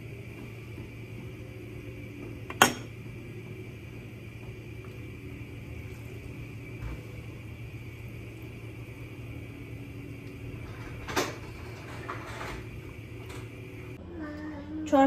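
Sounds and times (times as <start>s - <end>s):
steady hum: 0.0s - 15.0s.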